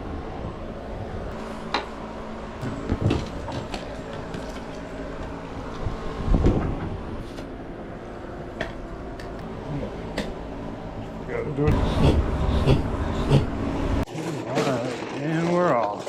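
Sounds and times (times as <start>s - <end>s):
rolling and wind rumble: 0.0s - 14.1s
bicycle knocks and rattles: 2.6s - 7.0s.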